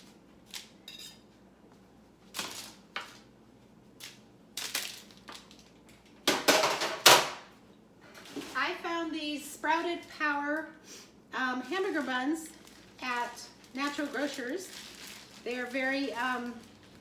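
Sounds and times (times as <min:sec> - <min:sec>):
kitchen items clattering: 0:04.6 - 0:07.4, 0:08.0 - 0:08.9.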